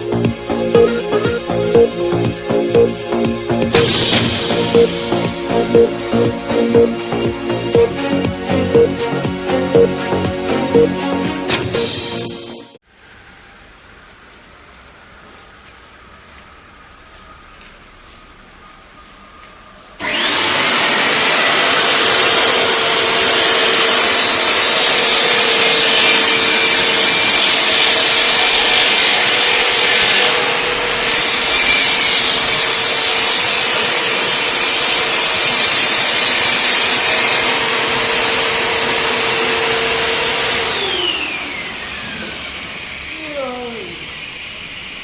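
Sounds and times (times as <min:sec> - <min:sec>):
vacuum cleaner motor whine: 0:20.0 - 0:45.0.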